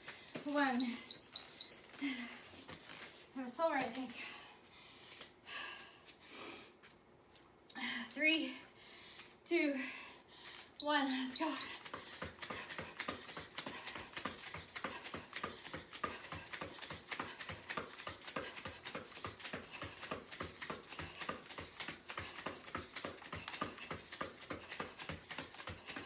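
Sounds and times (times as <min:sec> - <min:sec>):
rapid footfalls on floor: 0:11.8 - 0:26.0.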